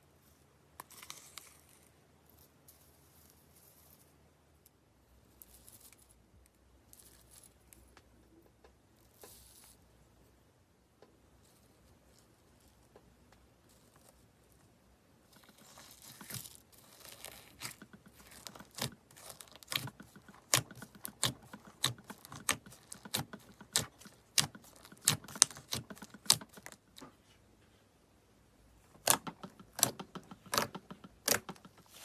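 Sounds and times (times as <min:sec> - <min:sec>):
slime crackling: 0:15.3 - 0:27.1, 0:29.0 - 0:32.0.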